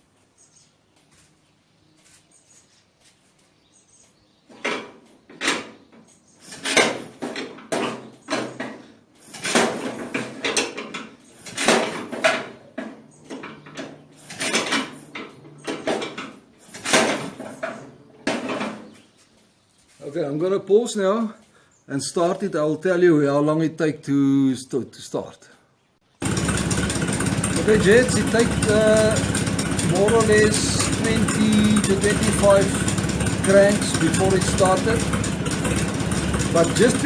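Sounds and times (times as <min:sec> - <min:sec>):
tractor engine cranking: 0:06.4 - 0:18.9, 0:26.2 - 0:37.0.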